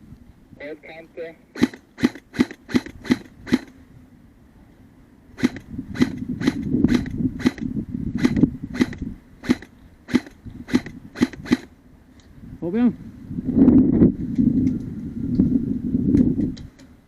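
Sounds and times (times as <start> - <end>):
airsoft gun shots: 1.6 - 3.8, 5.4 - 11.7.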